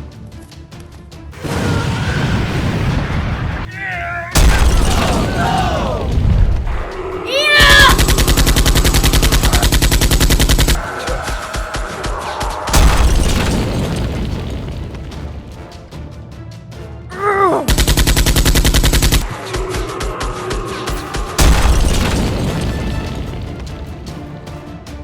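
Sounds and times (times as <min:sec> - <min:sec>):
background music: 0:00.0 - 0:25.0
automatic gunfire bursts: 0:07.7 - 0:10.8, 0:17.7 - 0:19.2.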